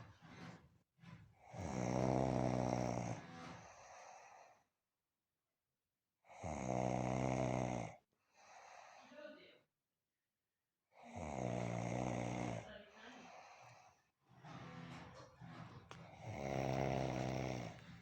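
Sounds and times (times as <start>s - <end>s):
person snoring: 1.5s - 4.6s, 6.3s - 9.2s, 11.0s - 14.0s, 16.1s - 18.0s.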